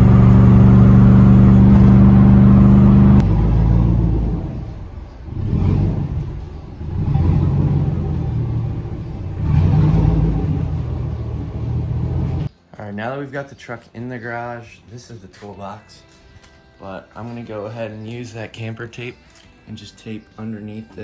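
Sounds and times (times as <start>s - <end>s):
pickup engine running: 0.0s - 12.5s.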